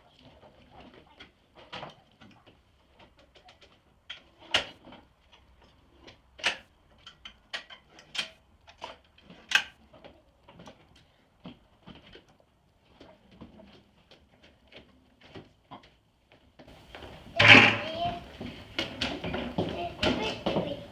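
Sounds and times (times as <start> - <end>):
sharp metal knocks: 17.4 - 18.0.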